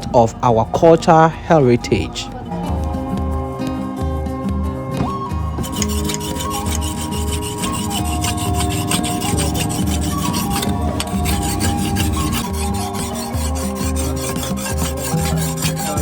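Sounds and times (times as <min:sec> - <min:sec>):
background music with low beat: 0:00.0 - 0:16.0
hand file rasping on steel blade: 0:05.6 - 0:16.0.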